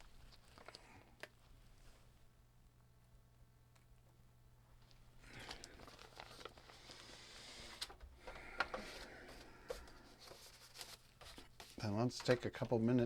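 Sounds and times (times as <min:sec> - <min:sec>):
rustling crinkling handling noise: 0:00.0 - 0:02.1, 0:04.8 - 0:13.0.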